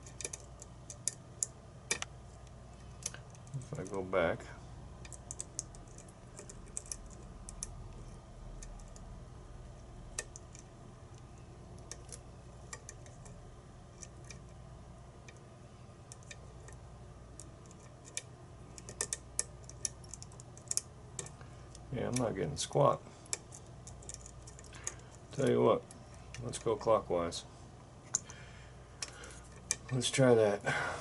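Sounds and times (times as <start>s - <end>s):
faint low hum: 0.0s - 31.0s
lock picks clicking in a lock: 5.0s - 7.8s, 17.4s - 21.3s.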